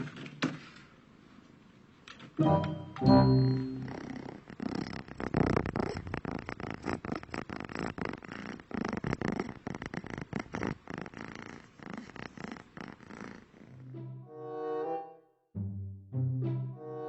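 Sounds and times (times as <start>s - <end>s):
cat purring: 3.2s - 13.9s.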